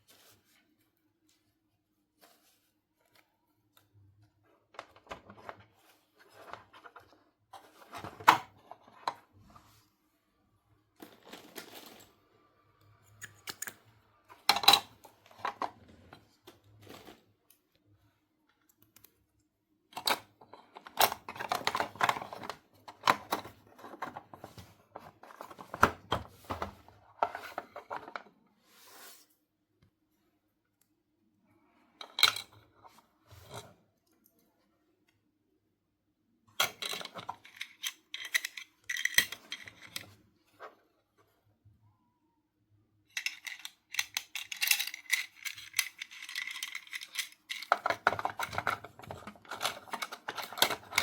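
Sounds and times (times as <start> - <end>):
plastic toy pieces clicking: 36.8 - 40.0, 43.1 - 48.8.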